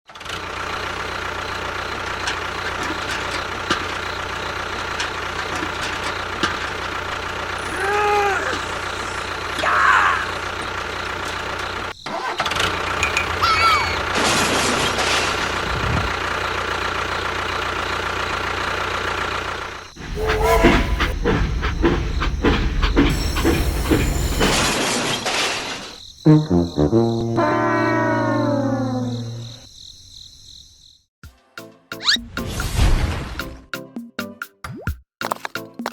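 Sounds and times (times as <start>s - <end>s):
short voice-like calls: 7.6s - 10.4s, 20.0s - 21.1s, 27.4s - 29.6s.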